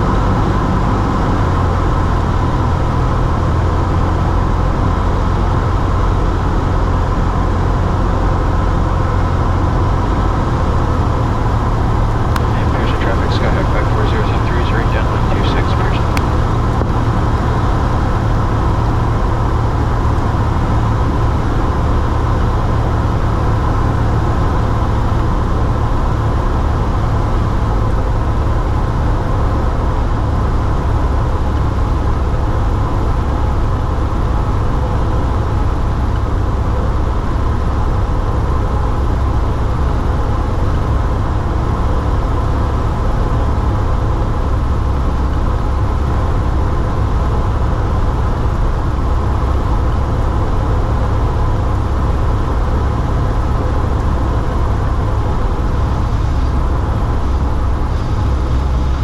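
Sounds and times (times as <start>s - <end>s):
airplane engine drone in cabin: 0.2s - 25.6s, 42.2s - 59.0s.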